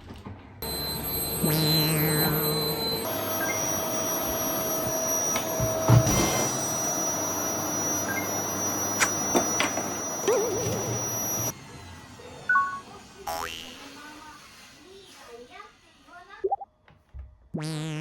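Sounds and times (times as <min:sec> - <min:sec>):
vacuum cleaner running: 0:00.6 - 0:11.6.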